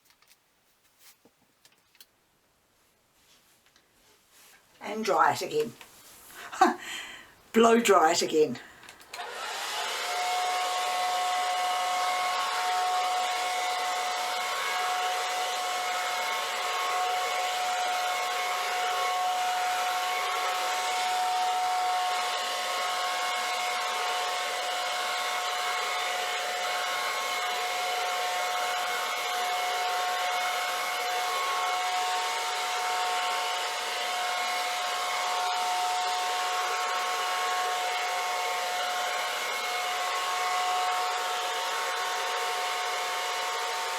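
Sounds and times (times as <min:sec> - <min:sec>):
hair dryer running: 0:08.8 - 0:43.9.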